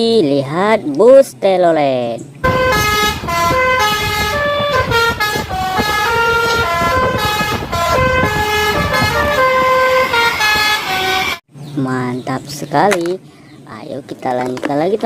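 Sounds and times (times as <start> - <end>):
multi-tone bus horn melody: 2.4 - 11.4.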